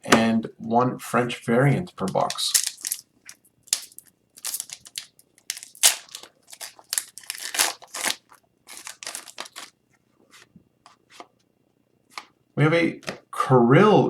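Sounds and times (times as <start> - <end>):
card wrappers rustling: 2.0 - 9.8.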